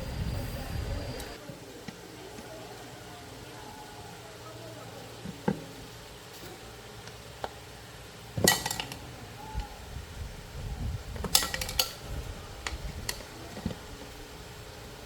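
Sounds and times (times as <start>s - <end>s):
dishes clinking: 8.4s - 9.0s.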